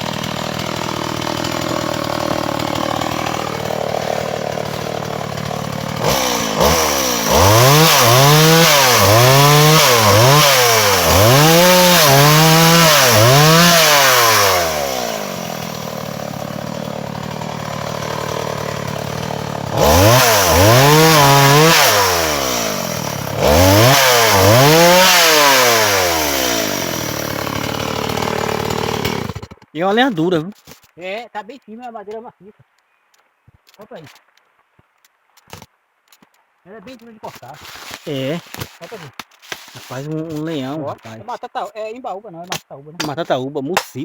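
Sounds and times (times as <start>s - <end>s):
chainsaw revving and cutting log: 0.0s - 29.7s.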